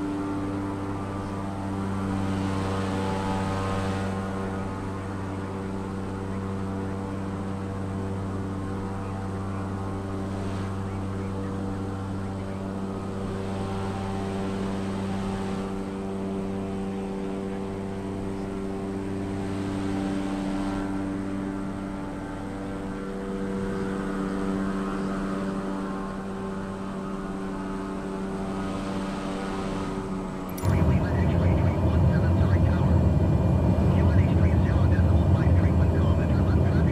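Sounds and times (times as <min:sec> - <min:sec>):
propeller engine drone: 0:00.0 - 0:36.9.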